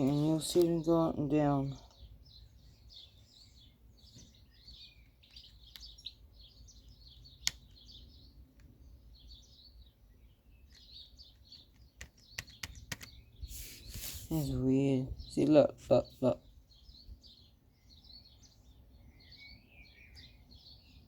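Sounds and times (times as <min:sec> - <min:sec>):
birds chirping and singing: 0:00.0 - 0:21.0
sharp clicks: 0:05.2 - 0:06.2, 0:07.3 - 0:07.9, 0:10.6 - 0:13.2.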